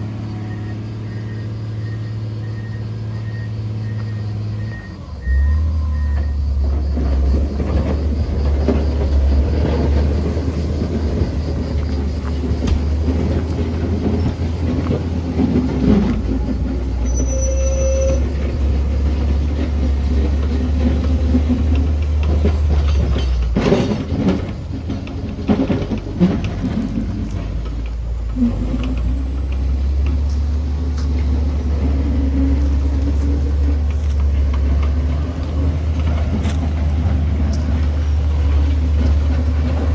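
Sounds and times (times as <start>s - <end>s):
diesel engine under load: 0.0s - 39.9s
machine clanks and rattles: 6.0s - 39.9s.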